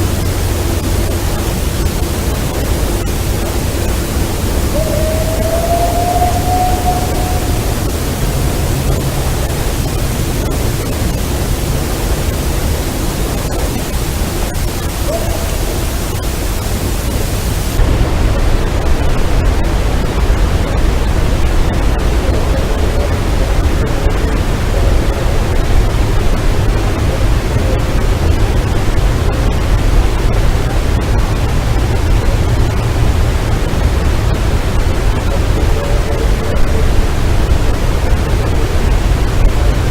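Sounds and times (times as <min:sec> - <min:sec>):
deep rumble: 0:00.0 - 0:16.7, 0:17.8 - 0:39.9
loud steady hiss: 0:00.0 - 0:39.9
faint rising tone: 0:04.6 - 0:09.4.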